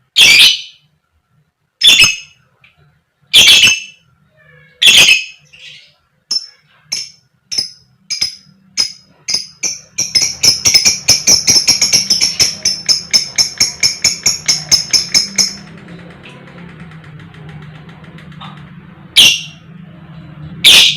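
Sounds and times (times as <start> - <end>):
lovebird chirping shrilly: 1.8 - 2.4, 3.3 - 4.0.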